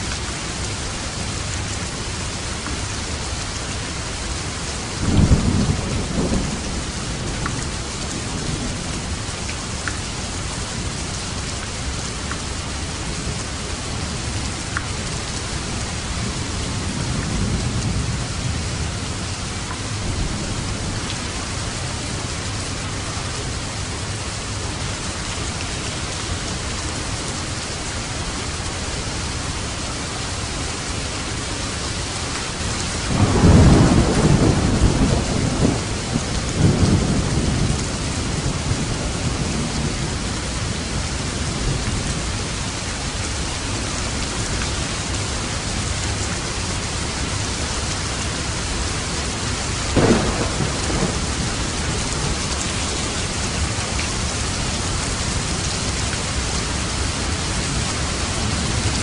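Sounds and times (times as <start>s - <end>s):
heavy rain on a roof: 0.0s - 59.0s
thunder rumbling: 32.8s - 41.8s, 49.2s - 59.0s
thunder clap: 50.0s - 52.6s.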